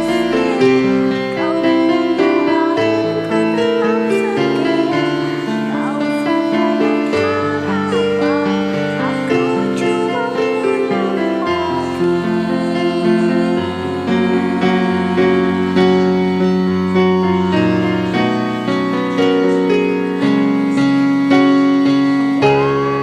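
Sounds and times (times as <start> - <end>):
piano chords: 0.0 - 23.0.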